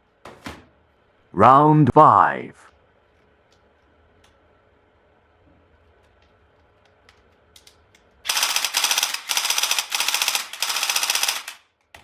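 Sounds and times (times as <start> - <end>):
toy gun clicks: 7.6 - 11.7
toy gun rattling bursts: 8.3 - 11.7.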